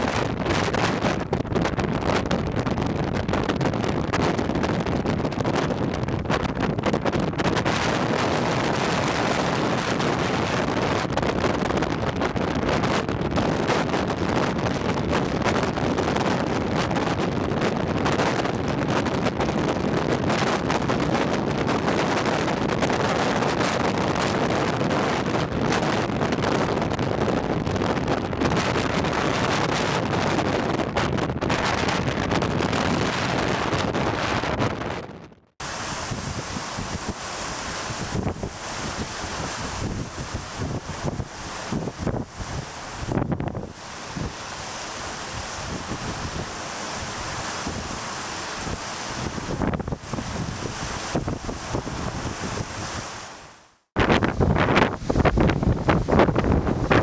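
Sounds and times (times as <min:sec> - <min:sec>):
wind buffeting microphone: 0:00.0 - 0:57.0
ocean surf on beach: 0:07.4 - 0:11.2, 0:35.6 - 0:57.0.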